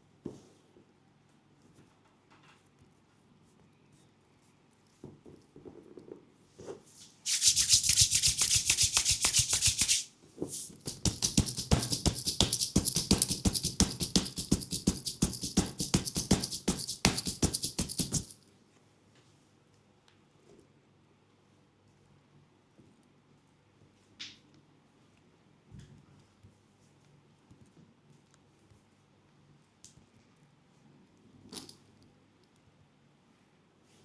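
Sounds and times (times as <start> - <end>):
percussive massage strikes on leg: 7.3 - 10.0, 10.6 - 18.4.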